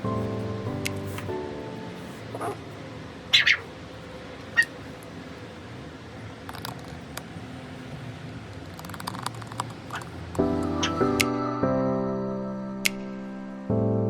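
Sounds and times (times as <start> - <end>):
faint room noise: 0.0 - 13.7
marker pen caps clicking: 8.7 - 10.1.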